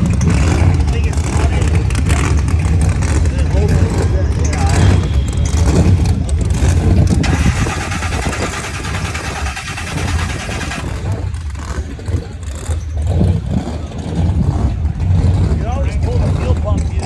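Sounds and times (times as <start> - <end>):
deep engine rumble: 0.0 - 17.0
starter motor cranking: 7.2 - 11.2.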